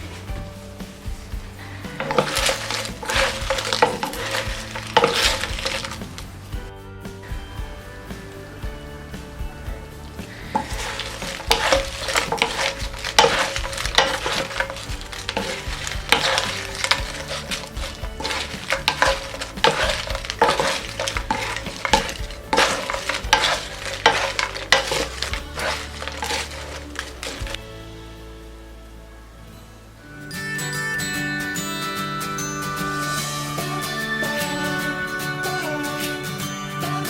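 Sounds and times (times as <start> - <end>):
pan sizzling: 0.0 - 6.7, 8.2 - 29.4
scraping and rattling strokes: 0.0 - 6.7, 10.0 - 27.7.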